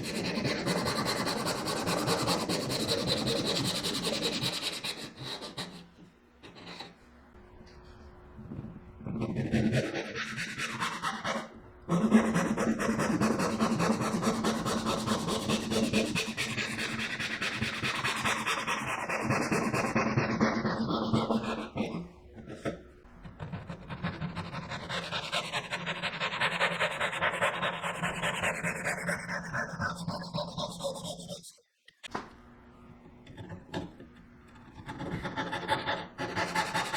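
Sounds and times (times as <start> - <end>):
hand saw cutting wood: 0.0 - 5.9, 9.3 - 22.1, 34.8 - 36.9.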